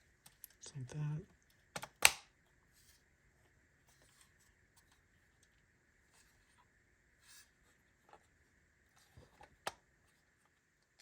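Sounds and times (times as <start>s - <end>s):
faint clicks of small switch parts: 1.4s - 2.3s.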